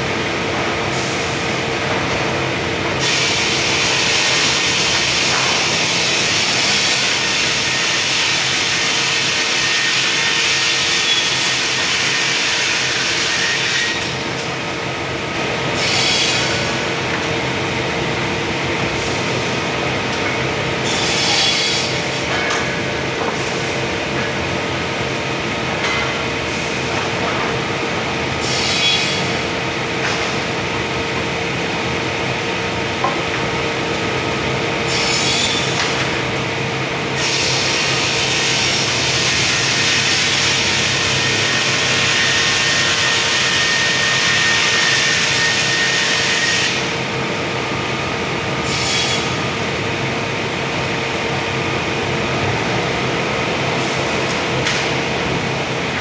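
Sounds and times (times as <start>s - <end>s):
sawmill machinery humming: 0.0s - 56.0s
saw cutting wood: 3.0s - 14.3s, 15.7s - 16.9s, 20.8s - 22.2s, 37.2s - 46.9s.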